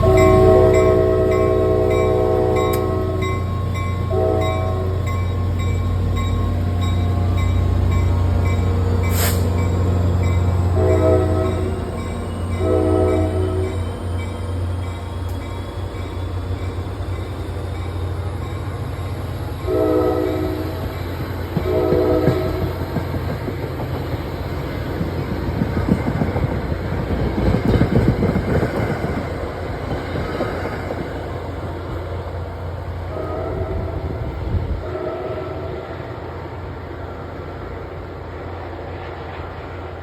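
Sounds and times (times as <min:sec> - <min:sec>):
locomotive horn blasts: 0:00.0 - 0:03.4, 0:04.0 - 0:05.1, 0:10.5 - 0:13.9, 0:19.6 - 0:20.9, 0:21.6 - 0:22.7, 0:33.1 - 0:34.2, 0:34.8 - 0:35.9
diesel locomotive engine drone: 0:00.0 - 0:40.0
train wheel and rail noise: 0:00.0 - 0:40.0.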